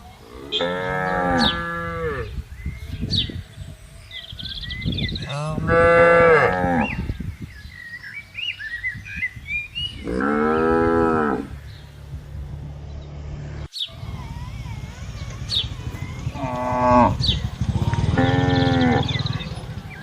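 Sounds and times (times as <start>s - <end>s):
cow mooing: 0.3s - 2.3s, 5.3s - 7.1s, 10.0s - 11.6s, 14.8s - 19.5s.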